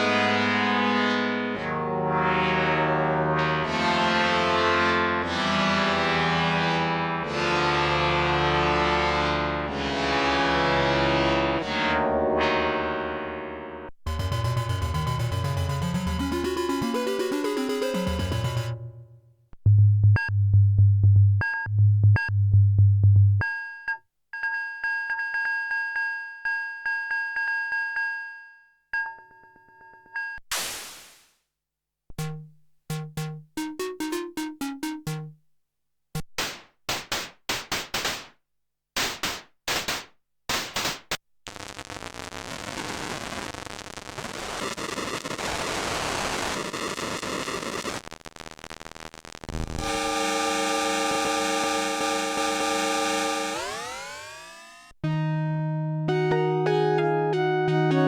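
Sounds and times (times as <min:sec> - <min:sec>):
synthesizer sounds: 0:00.3 - 0:05.4, 0:09.2 - 0:19.3, 0:32.1 - 0:35.4, 0:51.5 - 0:58.0
noisy synth wash: 0:11.5 - 0:19.2, 0:32.2 - 0:35.3.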